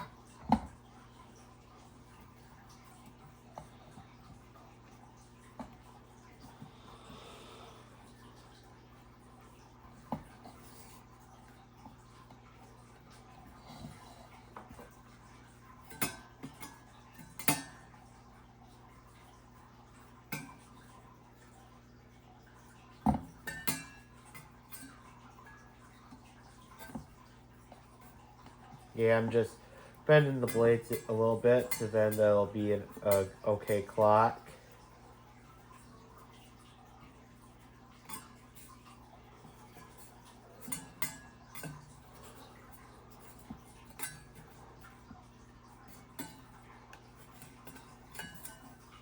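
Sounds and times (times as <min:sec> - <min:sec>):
metal fan blades clinking: 0:09.5 - 0:21.5, 0:22.8 - 0:49.0.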